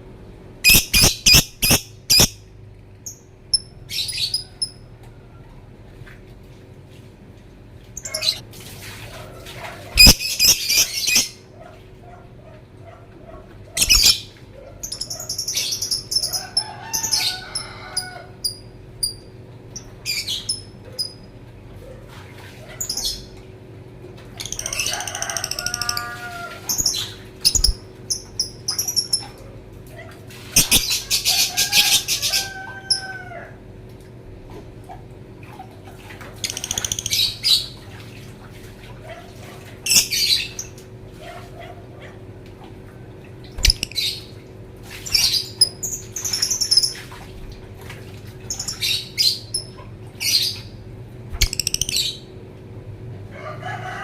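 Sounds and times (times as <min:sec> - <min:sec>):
lovebird shrill chatter: 0:00.7 - 0:02.4, 0:10.0 - 0:11.3, 0:27.5 - 0:27.8.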